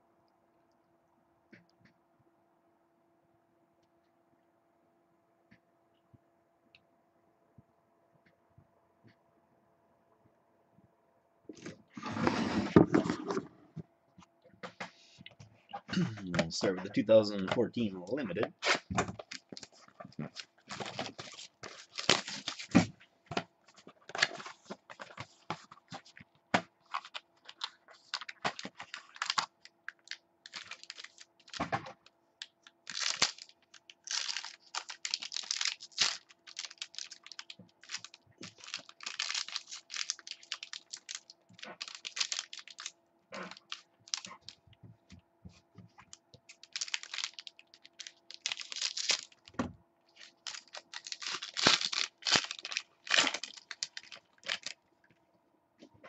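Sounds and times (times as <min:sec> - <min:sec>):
plastic wrap and foil tearing: 0:18.6 - 0:22.8, 0:26.8 - 0:31.7, 0:32.5 - 0:44.6, 0:46.5 - 0:49.5, 0:50.2 - 0:54.8.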